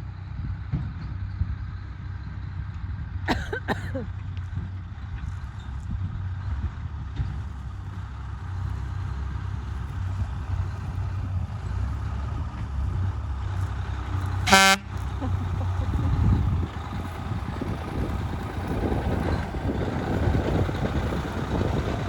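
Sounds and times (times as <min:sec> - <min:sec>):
vehicle engine rumbling: 0:00.0 - 0:22.0
short horn toot: 0:14.5 - 0:15.5.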